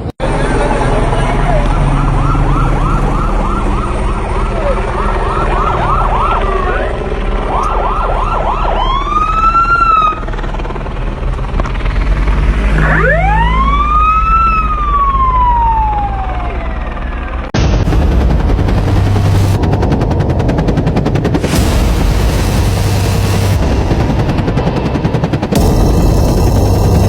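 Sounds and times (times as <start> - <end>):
emergency vehicle sirens: 0.2 - 11.0, 12.6 - 17.6
steady low rumble: 17.0 - 27.0
loud fast rattling noise: 17.8 - 27.0.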